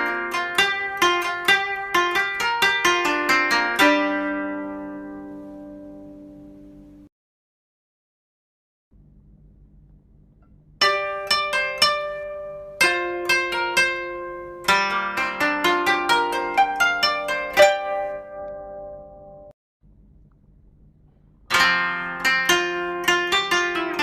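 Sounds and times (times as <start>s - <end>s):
plucked string instrument music: 0.0s - 7.1s, 10.8s - 19.5s, 21.5s - 24.0s.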